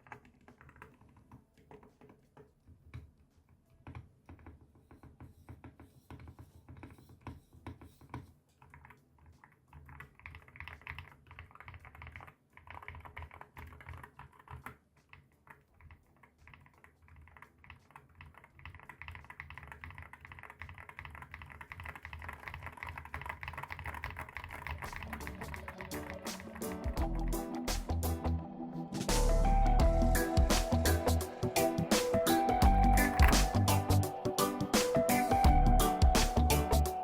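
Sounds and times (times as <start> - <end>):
mechanical keyboard typing: 8.6 - 27.0, 31.5 - 35.2.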